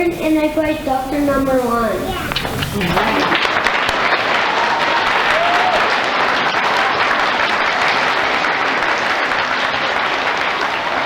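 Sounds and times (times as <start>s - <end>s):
audience applauding: 2.4s - 11.0s
faint cheer: 2.8s - 11.0s.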